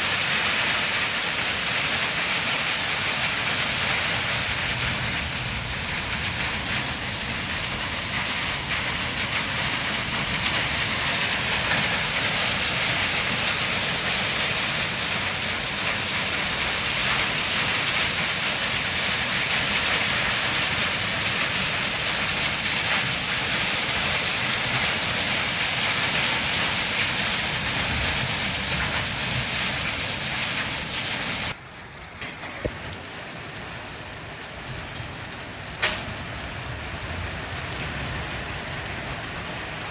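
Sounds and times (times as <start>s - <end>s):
heavy rain hissing: 0.0s - 31.7s
light rain patter: 0.0s - 39.9s.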